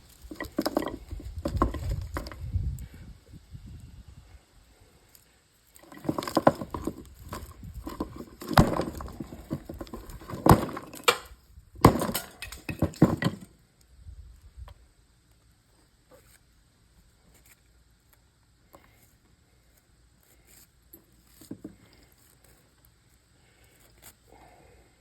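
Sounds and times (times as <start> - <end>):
plastic and metal parts rattling: 0.1 - 2.4, 5.8 - 13.5
sharp hard knocks: 8.4 - 13.4.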